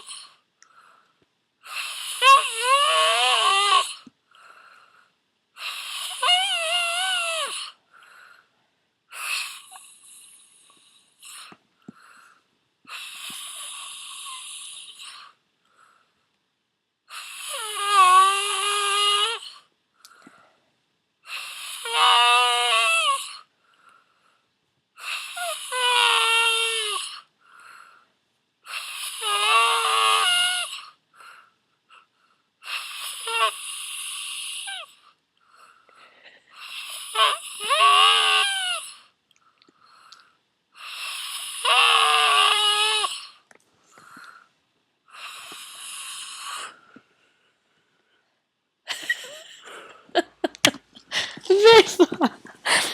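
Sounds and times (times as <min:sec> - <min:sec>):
person snoring in high whines: 0:00.0 - 0:00.4, 0:01.6 - 0:04.1, 0:05.6 - 0:07.8, 0:09.1 - 0:11.6, 0:12.9 - 0:15.4, 0:17.1 - 0:19.7, 0:21.3 - 0:23.5, 0:25.0 - 0:27.3, 0:28.7 - 0:31.4, 0:32.0 - 0:35.1, 0:36.6 - 0:39.2, 0:40.8 - 0:43.5, 0:45.1 - 0:46.9, 0:50.6 - 0:52.1
faint breaths: 0:00.0 - 0:02.3, 0:03.9 - 0:06.2, 0:07.6 - 0:16.4, 0:19.6 - 0:21.5, 0:23.4 - 0:25.5, 0:27.4 - 0:28.2, 0:34.9 - 0:37.1, 0:39.0 - 0:41.2, 0:43.2 - 0:48.5, 0:50.9 - 0:52.9
man snoring: 0:17.1 - 0:19.5, 0:40.8 - 0:43.4.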